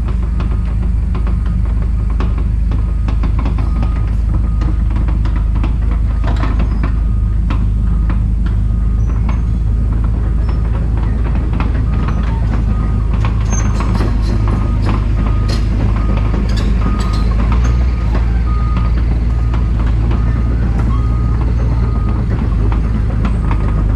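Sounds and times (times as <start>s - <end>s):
diesel machine rumbling: 0.0s - 23.9s.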